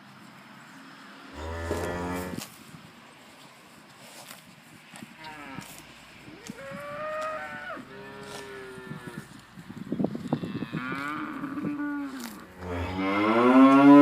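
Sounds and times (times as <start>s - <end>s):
cow mooing: 1.4s - 2.4s, 6.6s - 9.3s, 10.4s - 14.0s.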